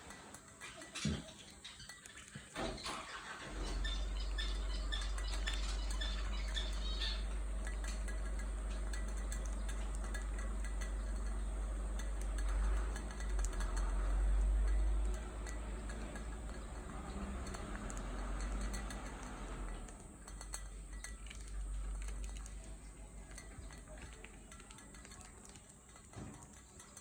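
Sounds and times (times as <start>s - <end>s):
small clinks: 0.0s - 27.0s
budgerigar chirping: 3.0s - 7.4s.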